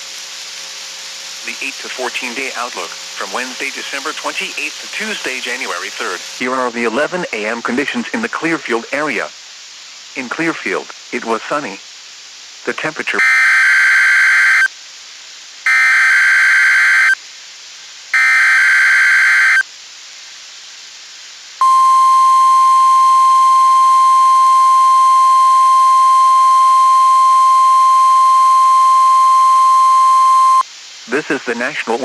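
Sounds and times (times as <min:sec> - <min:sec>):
hiss: 0:00.0 - 0:13.2, 0:14.7 - 0:15.7, 0:19.6 - 0:21.6, 0:30.6 - 0:32.0
warbling digital data bursts: 0:01.4 - 0:06.9
steady alert tone: 0:21.6 - 0:30.6.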